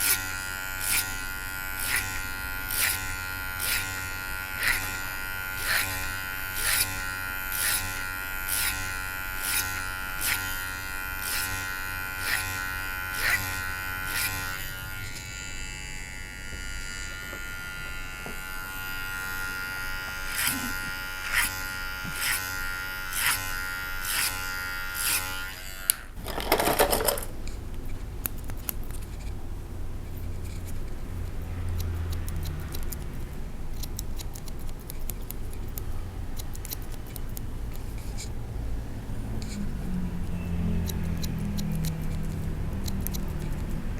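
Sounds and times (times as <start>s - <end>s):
electric hair clipper humming: 0.0s - 27.4s, 31.0s - 34.9s, 39.4s - 43.9s
scissors snipping: 20.3s - 22.5s, 27.0s - 29.4s, 30.4s - 38.3s, 40.7s - 43.9s.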